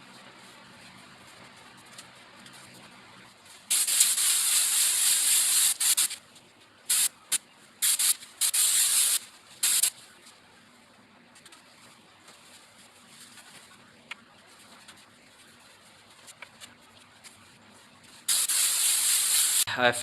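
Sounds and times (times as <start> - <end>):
spray gun hissing: 3.7 - 6.2, 6.9 - 7.1, 7.8 - 9.9, 18.3 - 19.7.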